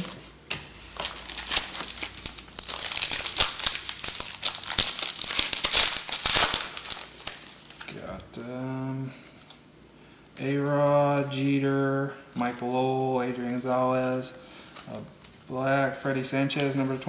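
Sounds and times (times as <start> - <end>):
wrapper tearing and crinkling: 0.9 - 8.0.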